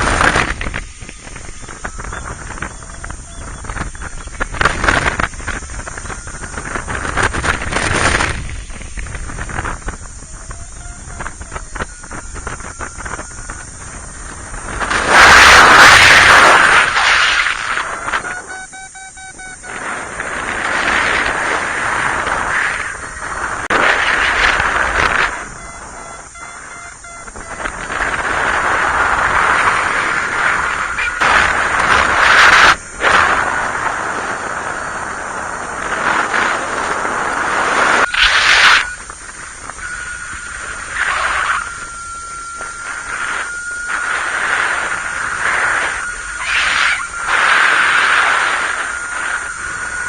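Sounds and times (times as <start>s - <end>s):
wind rushing over microphone: 0.0s - 50.0s
faint steady high tone: 0.8s - 4.5s, 8.5s - 14.7s, 17.7s - 20.1s, 25.2s - 28.3s, 38.0s - 50.0s
variometer beeping rapidly: 17.8s - 20.0s, 25.1s - 28.3s.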